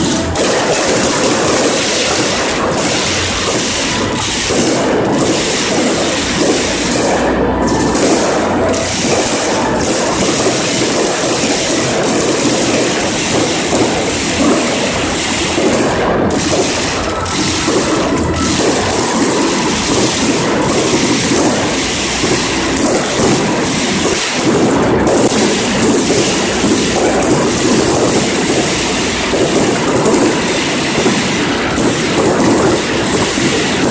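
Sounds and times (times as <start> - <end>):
firecrackers crackling: 0.0 - 33.9.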